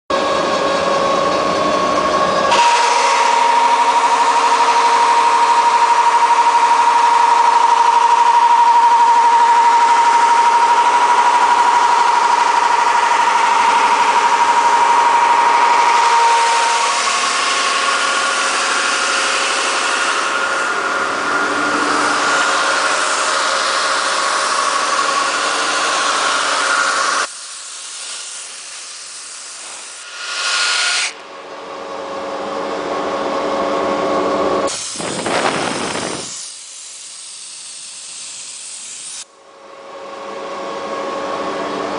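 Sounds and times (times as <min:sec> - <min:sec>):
brushing machine scrubbing wood: 0:16.6 - 0:31.2.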